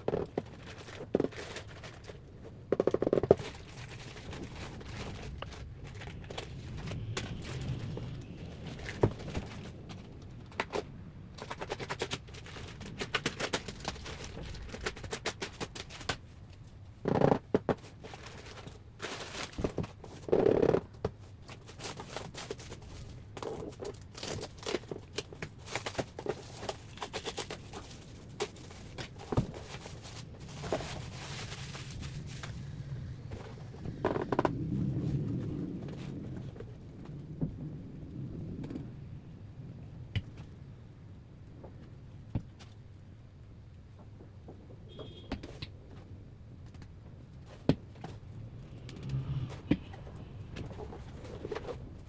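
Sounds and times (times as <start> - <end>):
packaging being handled and opened: 0.0 - 16.8, 17.4 - 34.4.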